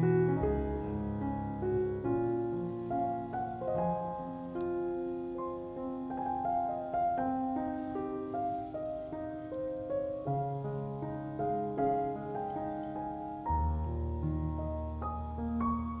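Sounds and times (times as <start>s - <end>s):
gentle piano music: 0.0s - 16.0s.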